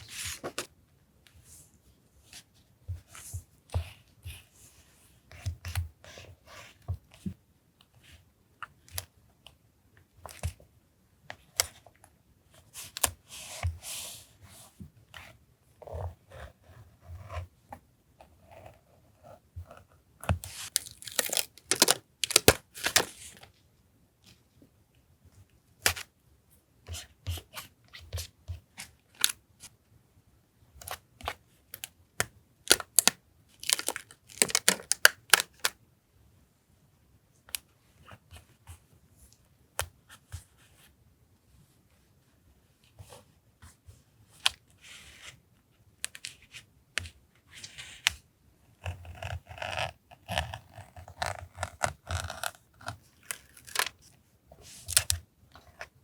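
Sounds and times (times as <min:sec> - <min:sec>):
paper tearing and rustling: 0:20.8 - 0:23.2.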